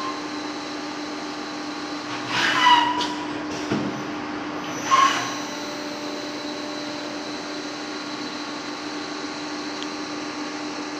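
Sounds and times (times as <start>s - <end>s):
lathe machine hum: 4.0s - 10.9s.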